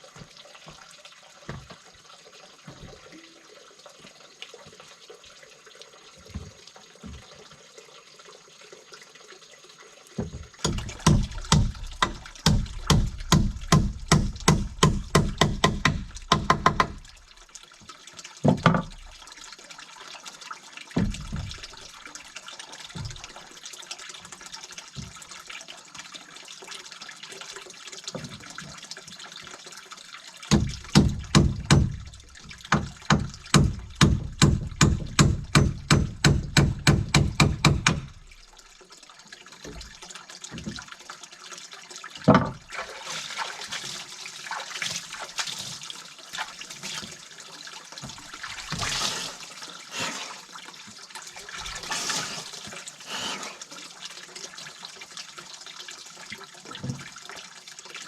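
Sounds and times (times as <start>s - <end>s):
water trickling: 0.0s - 58.0s
water splashing: 10.2s - 17.5s, 42.2s - 47.4s, 48.0s - 53.8s.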